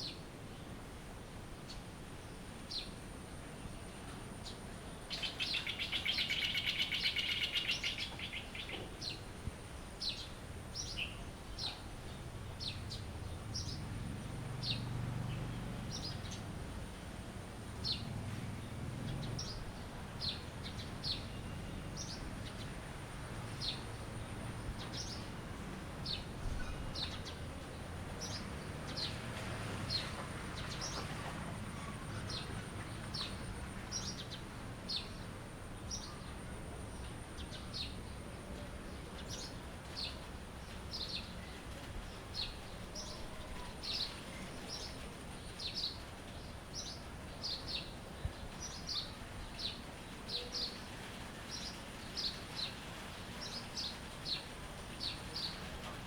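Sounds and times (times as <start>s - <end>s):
faint high hiss: 0.0s - 56.0s
birds chirping: 4.4s - 9.2s.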